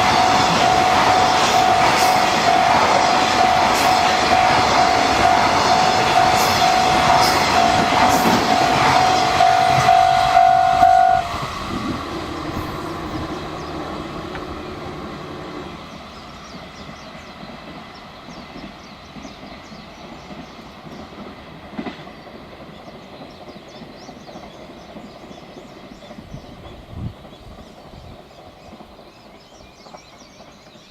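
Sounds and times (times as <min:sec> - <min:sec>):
level crossing warning bell: 0:00.0 - 0:15.7
freight train wheels clattering on rails: 0:00.0 - 0:30.9.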